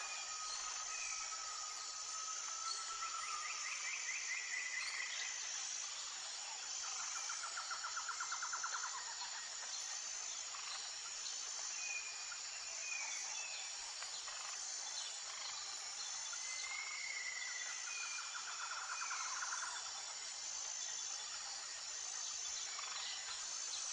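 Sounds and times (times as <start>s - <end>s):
insects trilling: 0.0s - 23.9s
fast pulsed insect trill: 14.3s - 23.9s.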